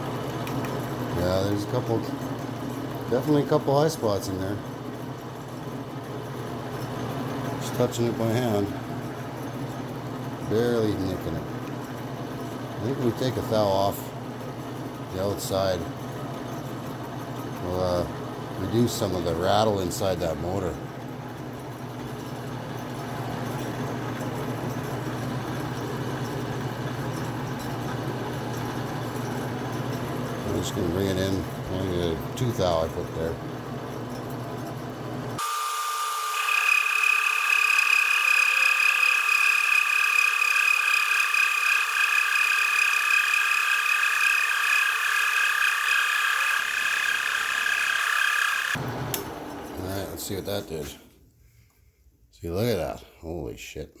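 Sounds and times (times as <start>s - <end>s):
metal lathe humming: 0.2s - 50.1s
metal lathe whining: 6.0s - 14.0s, 35.4s - 49.8s.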